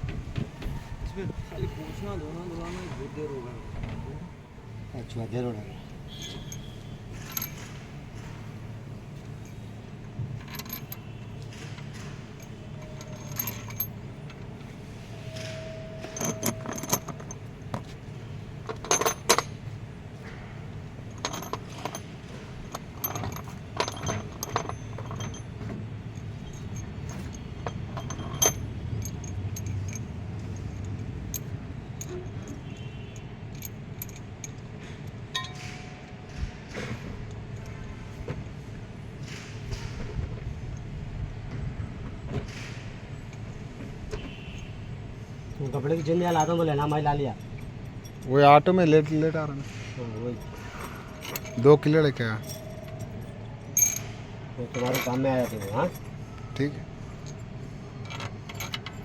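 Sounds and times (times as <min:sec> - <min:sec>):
metal tools clinking: 0:06.0 - 0:37.9, 0:45.4 - 0:59.0.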